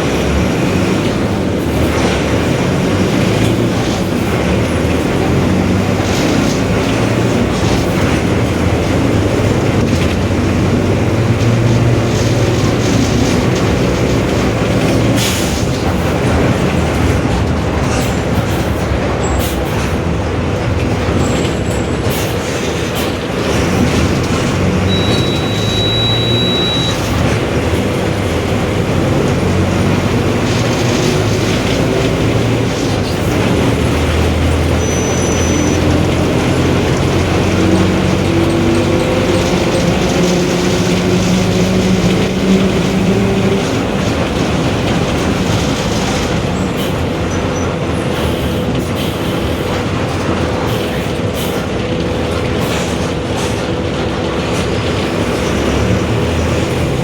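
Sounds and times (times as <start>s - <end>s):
bus body rattle: 0.0s - 57.0s
bus engine drone: 0.0s - 57.0s
short high beep: 24.9s - 27.0s.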